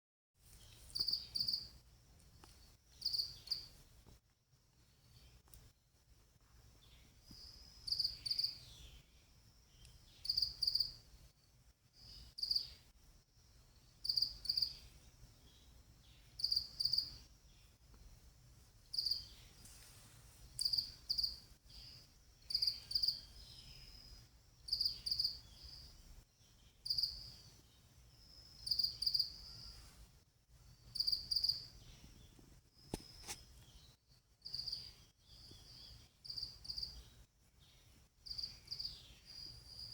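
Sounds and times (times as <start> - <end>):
cricket chirping: 0.7 - 3.8, 7.3 - 9.0, 9.6 - 11.1, 12.0 - 18.2, 18.9 - 19.5, 20.6 - 29.9, 30.8 - 32.1, 32.8 - 39.9.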